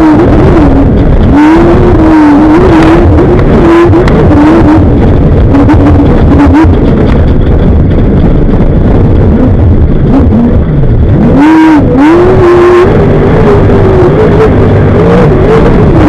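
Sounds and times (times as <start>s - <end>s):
vehicle engine running hard: 0.0s - 16.0s
chassis knocks and rattles: 4.8s - 10.1s.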